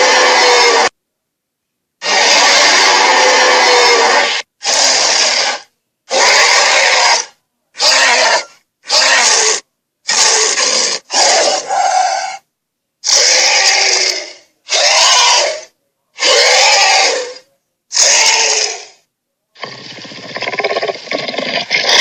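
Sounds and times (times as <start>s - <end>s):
raspy creature roars and growls: 0.0s - 0.9s, 2.0s - 8.4s, 13.1s - 19.0s.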